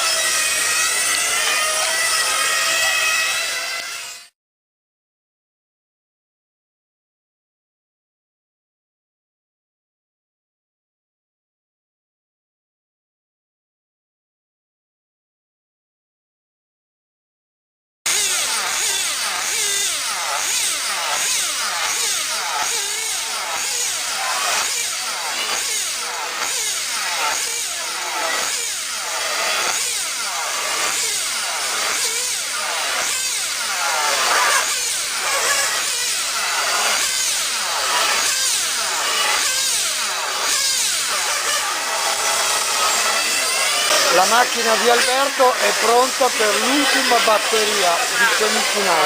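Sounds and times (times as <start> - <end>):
small rc car engines whining: 0.0 - 4.4, 18.1 - 49.0.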